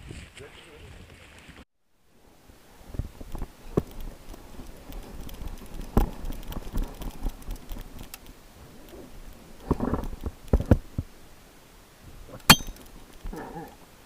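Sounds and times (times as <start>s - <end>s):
sharp metallic clink: 12.5s - 12.8s.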